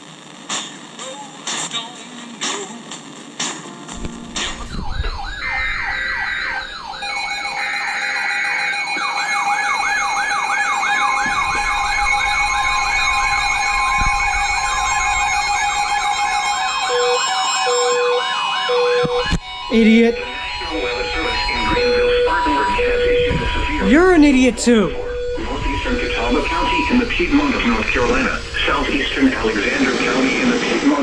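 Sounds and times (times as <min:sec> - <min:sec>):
steady siren tones: 0:04.0 - 0:30.5
lower beeps: 0:04.1 - 0:29.0
electronic siren yelp: 0:04.2 - 0:28.3
fast siren warble: 0:04.4 - 0:28.0.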